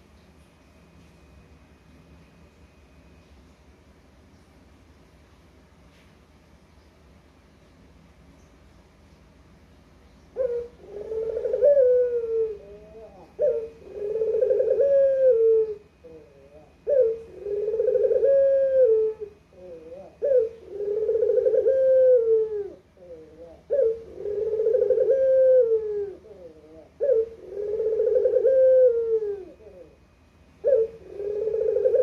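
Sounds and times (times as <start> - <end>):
dove cooing: 10.3 - 32.0.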